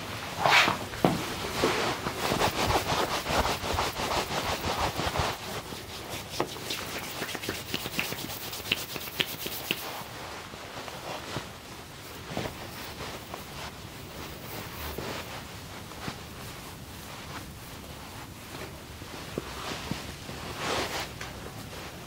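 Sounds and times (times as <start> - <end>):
hands rubbing skin: 2.2 - 10.2.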